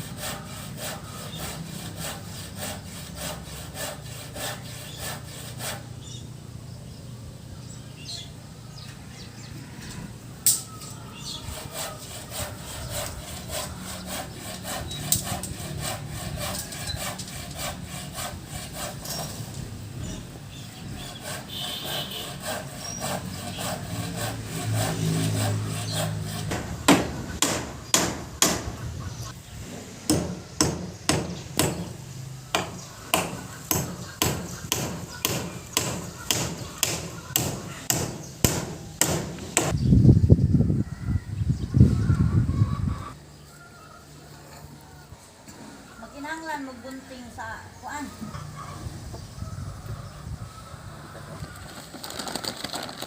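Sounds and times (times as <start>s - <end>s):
hand saw cutting wood: 0.0s - 6.0s, 11.2s - 19.7s, 20.8s - 28.8s, 29.7s - 39.8s
sharp knocks: 26.5s - 28.8s, 30.1s - 32.0s, 32.6s - 39.8s.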